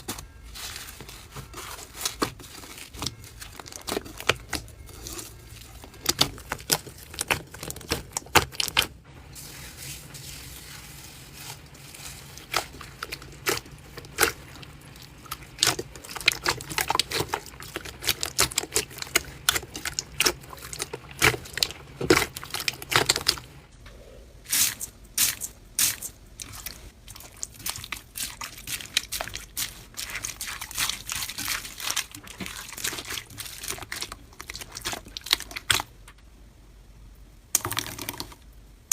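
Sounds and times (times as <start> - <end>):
slime squishing and popping: 1.4 - 9.0, 12.4 - 23.6.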